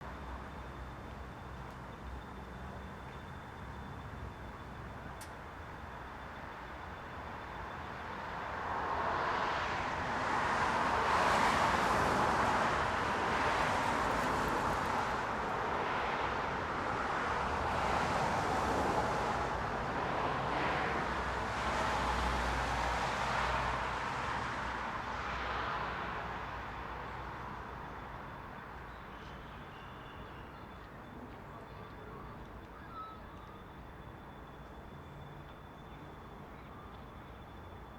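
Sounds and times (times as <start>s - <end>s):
cars driving past: 8.3s - 28.8s.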